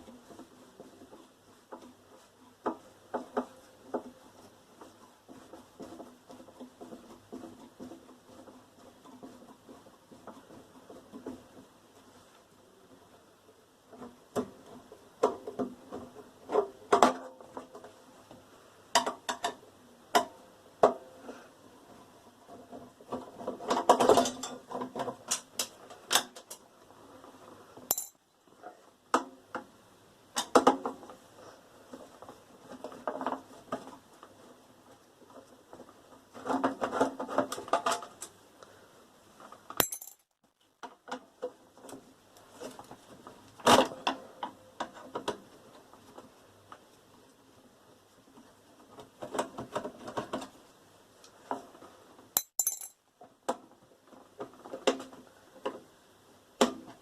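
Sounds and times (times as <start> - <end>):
metal parts clinking and rattling: 27.9 - 28.2, 39.8 - 40.3, 52.4 - 53.0.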